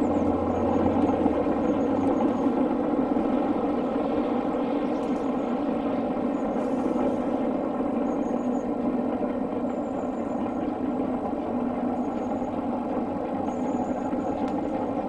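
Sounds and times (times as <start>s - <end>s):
steam train running: 0.0s - 15.0s.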